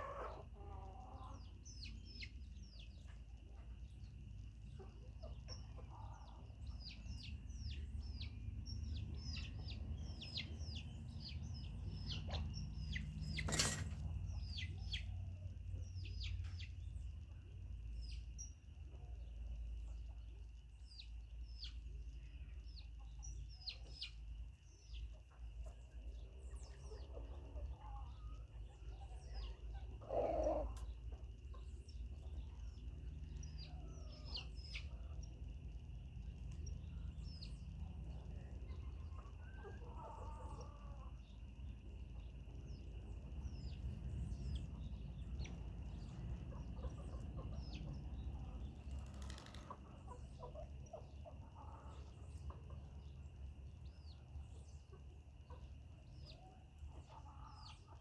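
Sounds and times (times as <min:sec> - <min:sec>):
chickens clucking: 0:00.0 - 0:02.4, 0:09.4 - 0:15.1, 0:26.7 - 0:31.6, 0:37.5 - 0:41.3, 0:44.7 - 0:53.4, 0:54.8 - 0:58.0.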